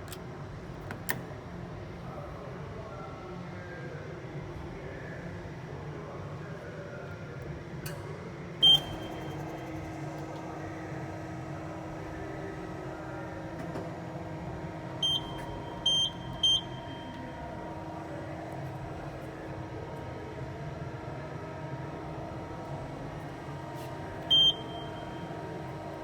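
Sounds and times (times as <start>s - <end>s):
short electronic beeps: 24.3s - 25.1s.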